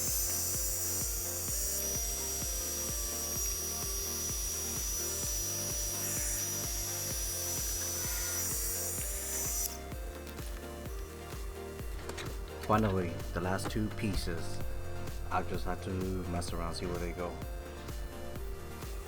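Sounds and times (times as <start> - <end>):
background music with steady beat: 0.0 - 19.0.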